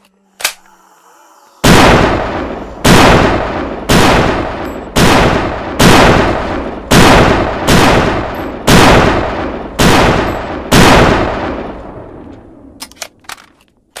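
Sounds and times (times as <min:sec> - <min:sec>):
long rolling echo: 0:00.8 - 0:12.8
loud rifle shots: 0:01.6 - 0:12.2
small metallic clicks: 0:12.8 - 0:14.0.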